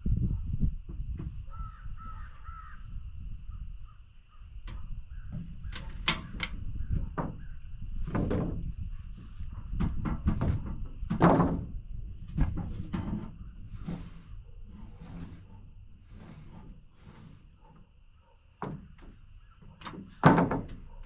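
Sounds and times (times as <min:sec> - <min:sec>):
wooden boards knocking and nailing: 0:04.7 - 0:08.8, 0:09.5 - 0:14.1, 0:18.6 - 0:21.0.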